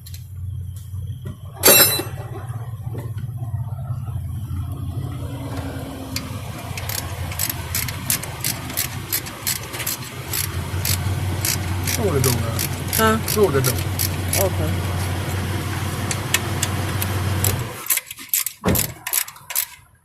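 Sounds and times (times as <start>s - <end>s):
vehicle engine idling: 0.0s - 17.8s
metallic clank of hand tool: 1.6s - 2.2s
sharp clicks: 6.1s - 14.5s.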